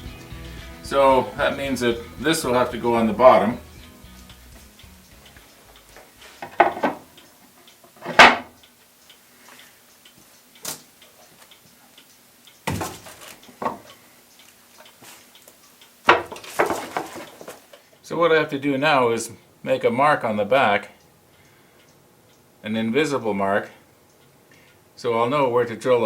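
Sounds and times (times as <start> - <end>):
wooden boards knocking: 6.4 - 7.0, 8.0 - 8.6, 16.1 - 17.2.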